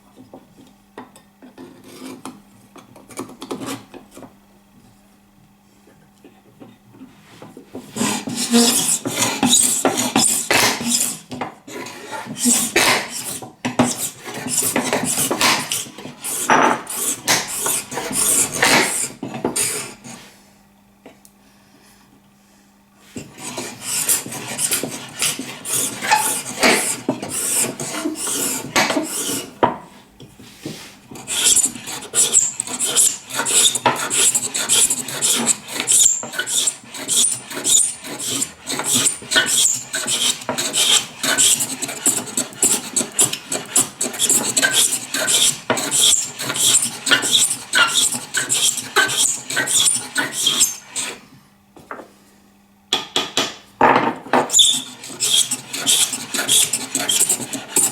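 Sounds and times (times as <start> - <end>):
plane blade being sharpened: 7.9 - 20.2, 23.2 - 29.6, 31.1 - 51.2, 54.5 - 57.9.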